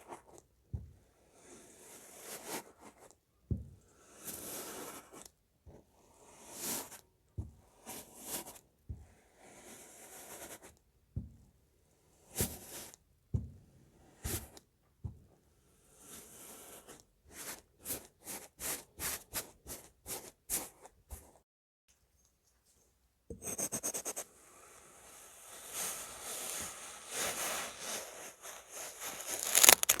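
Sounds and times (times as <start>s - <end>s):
cutting strokes in sand: 24.9s - 30.0s
sand squishing and crunching: 27.8s - 30.0s
sharp crunch: 29.0s - 30.0s.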